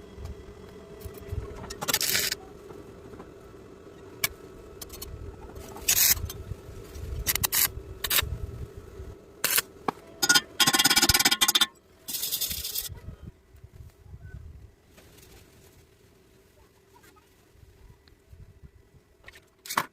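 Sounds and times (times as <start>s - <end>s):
welding arc crackling: 0.0s - 3.5s, 4.2s - 12.9s
steady hum: 0.0s - 16.5s.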